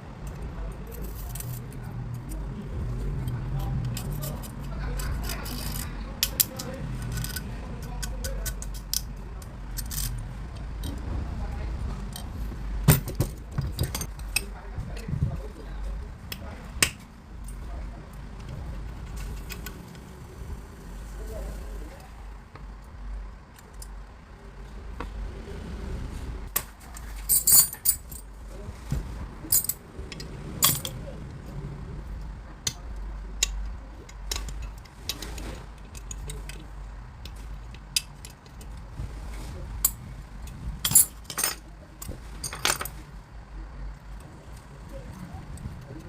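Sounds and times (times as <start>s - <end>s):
low steady rumble: 0.0s - 46.0s
metal tools clinking and knocking: 3.2s - 10.2s, 12.1s - 14.5s, 26.9s - 28.2s, 29.5s - 31.0s, 40.8s - 43.0s.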